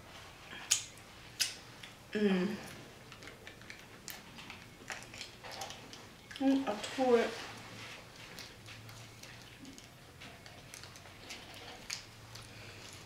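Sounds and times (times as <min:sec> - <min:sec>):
food wrapping crinkling: 0:03.1 - 0:13.0.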